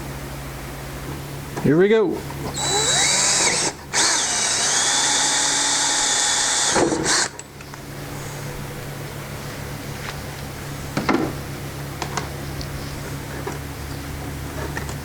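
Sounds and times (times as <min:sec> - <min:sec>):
electric drill cutting plastic: 0:02.5 - 0:07.4.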